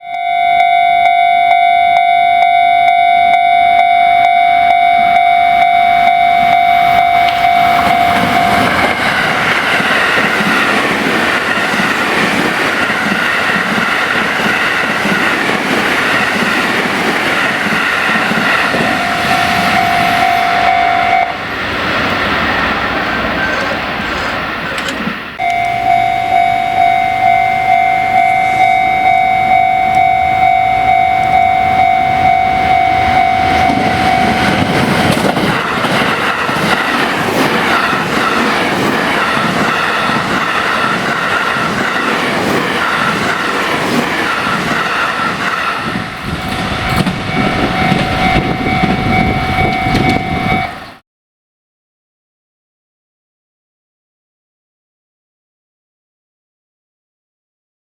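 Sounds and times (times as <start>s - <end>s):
level crossing electronic bell: 0.0s - 8.8s, 18.8s - 21.4s, 25.4s - 34.7s, 46.9s - 50.9s
train wheels clattering over joints: 33.6s - 50.5s.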